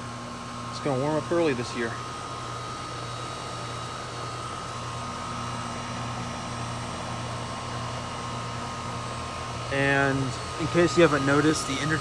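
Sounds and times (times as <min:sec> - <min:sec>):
fan rushing: 0:00.0 - 0:12.0
low compressor hum: 0:05.0 - 0:12.0.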